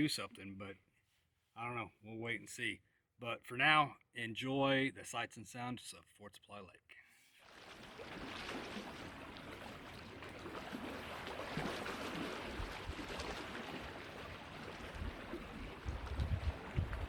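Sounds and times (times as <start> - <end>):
lake water washing: 7.4 - 17.0
wind buffeting microphone: 11.5 - 17.0.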